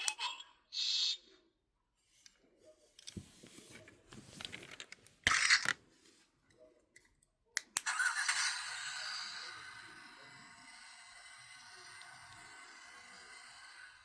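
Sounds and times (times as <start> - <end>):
plastic toy clicks and rattles: 4.5 - 5.8.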